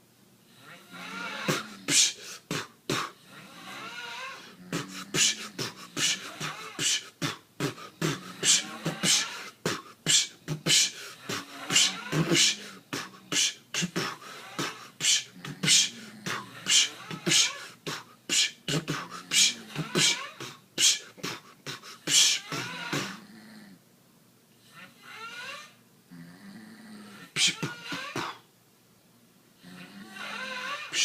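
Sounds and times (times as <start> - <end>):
snoring: 0.5 - 17.7, 18.4 - 21.0, 21.7 - 23.8, 26.1 - 28.4, 29.6 - 31.0
beatboxing drum and bass beat: 1.5 - 3.2, 4.7 - 23.2, 27.4 - 28.4.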